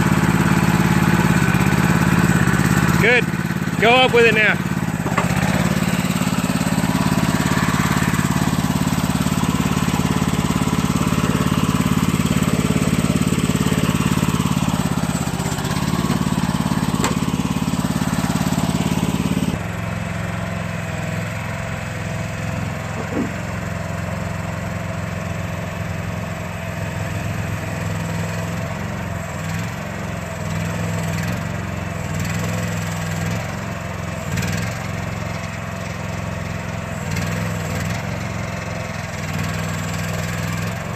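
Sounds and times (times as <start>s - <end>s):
small engine running: 0.0s - 40.9s.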